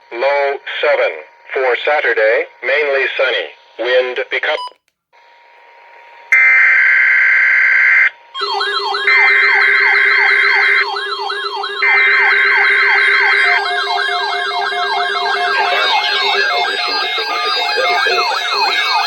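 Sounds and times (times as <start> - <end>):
wailing siren alarm: 7.9 - 19.0
screeching digital data bursts: 8.4 - 19.0.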